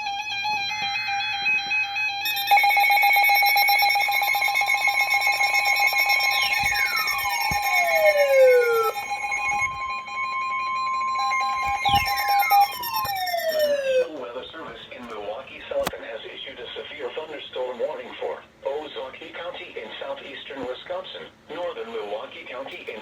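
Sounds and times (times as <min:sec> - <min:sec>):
buzzing pulsed tone: 0:00.0 - 0:14.1
two-tone attention signal: 0:02.2 - 0:14.2.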